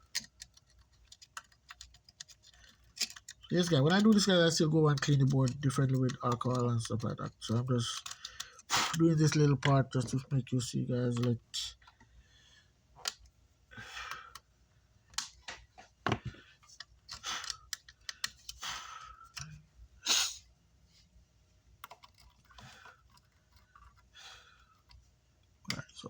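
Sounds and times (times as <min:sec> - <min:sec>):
hand tools clicking: 0:00.1 - 0:04.3.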